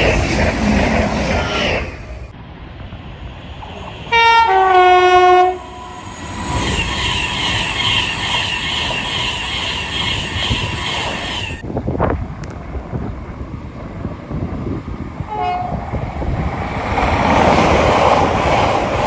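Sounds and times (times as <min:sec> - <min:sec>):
train running rushing noise: 0:00.0 - 0:19.0
two-tone train horn: 0:04.0 - 0:06.1, 0:15.3 - 0:15.9.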